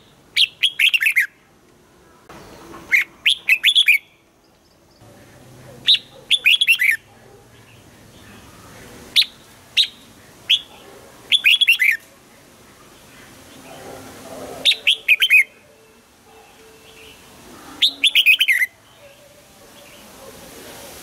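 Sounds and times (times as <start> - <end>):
bulbul singing: 0.0 - 1.4, 2.3 - 12.1, 14.6 - 20.2.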